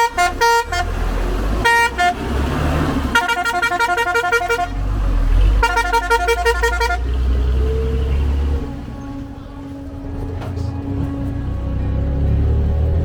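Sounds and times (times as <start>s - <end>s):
vehicle horn beeps: 0.0s - 1.0s, 1.6s - 2.3s, 3.1s - 4.8s, 5.4s - 7.4s
low engine rumble: 0.0s - 13.0s.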